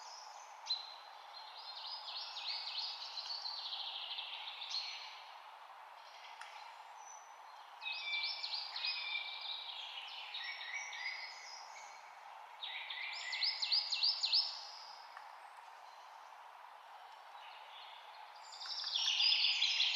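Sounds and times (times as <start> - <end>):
steady background hiss: 0.0 - 19.9.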